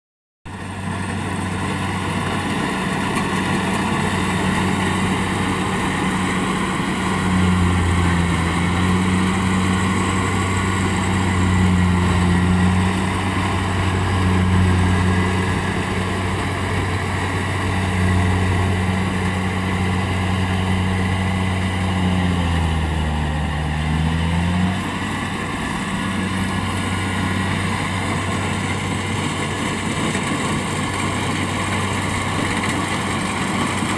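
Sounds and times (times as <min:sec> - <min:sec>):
harvesting machine engine running: 0:00.5 - 0:33.9.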